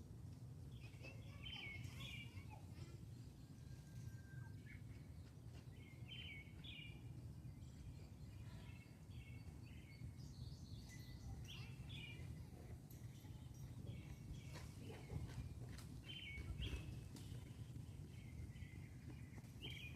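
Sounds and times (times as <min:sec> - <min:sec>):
low steady background rumble: 0:00.0 - 0:19.9
small birds chirping: 0:00.7 - 0:19.9.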